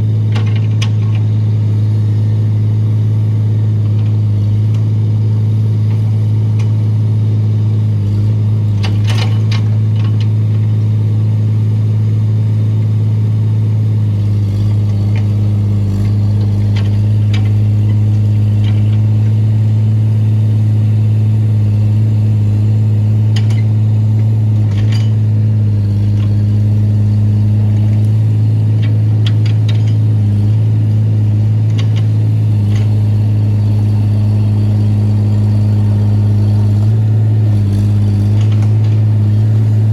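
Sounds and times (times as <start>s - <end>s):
excavator diesel engine running: 0.0s - 39.9s
metal clanks and knocks: 24.6s - 25.2s.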